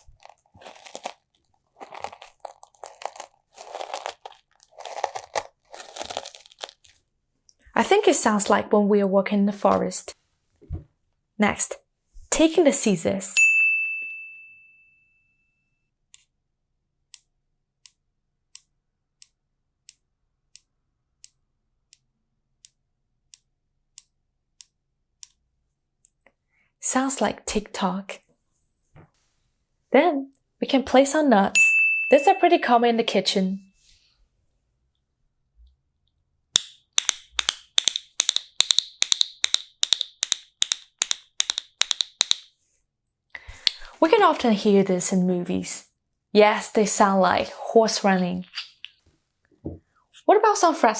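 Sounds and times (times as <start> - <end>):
nuts clacking in galloping rhythm: 37.4 - 42.4.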